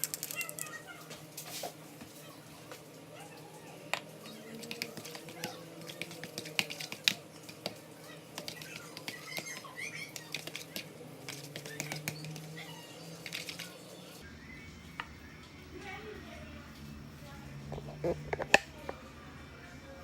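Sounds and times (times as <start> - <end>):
faint background voices: 15.5 - 20.0.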